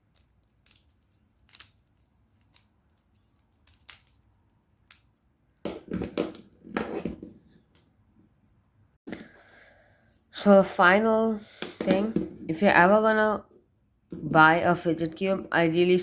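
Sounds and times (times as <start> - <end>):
puzzle cube clicking and rattling: 0.0 - 5.2.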